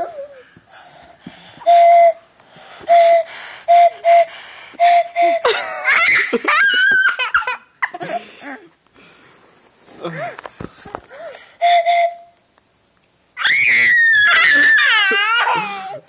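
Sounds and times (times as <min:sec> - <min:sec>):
toy train whistle toots: 0:01.7 - 0:02.2, 0:02.9 - 0:05.4, 0:11.6 - 0:12.3
child laughing: 0:05.2 - 0:08.7, 0:14.2 - 0:16.0.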